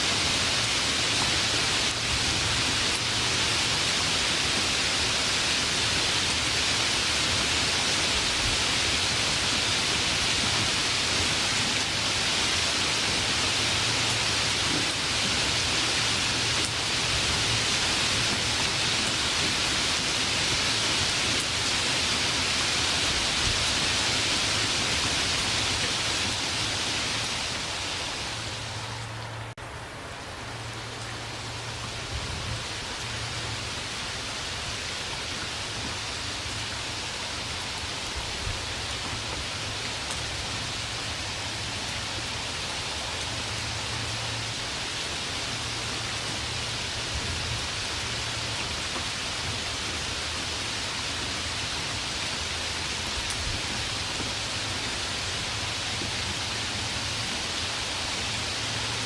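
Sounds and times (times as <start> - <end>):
steady rain hissing: 0.0 - 59.0.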